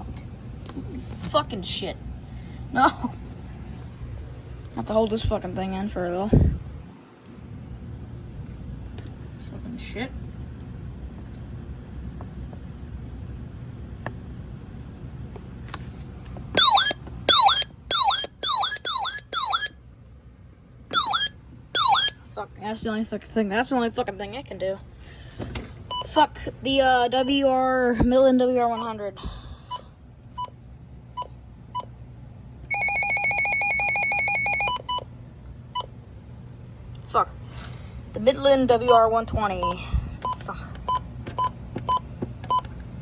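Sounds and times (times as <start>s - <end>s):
pulsing electronic alarm: 16.6s - 19.8s, 20.9s - 22.2s, 32.7s - 35.0s.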